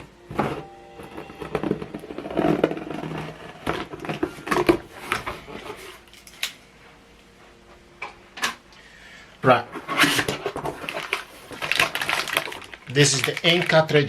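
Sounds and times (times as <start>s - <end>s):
cardboard packaging rustling: 0.0s - 6.4s, 9.7s - 14.0s.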